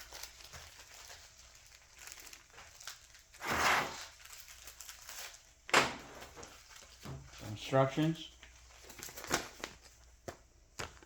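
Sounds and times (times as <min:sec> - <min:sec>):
plastic packaging crinkling: 0:00.0 - 0:11.0.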